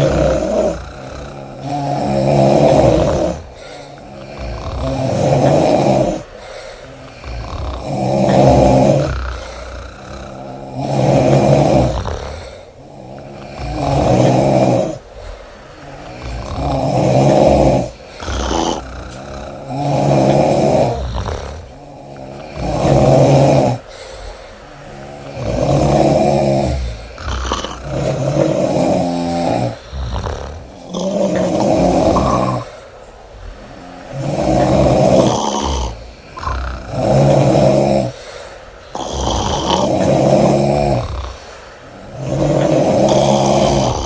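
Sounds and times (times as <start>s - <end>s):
woman snoring: 0.0s - 44.0s.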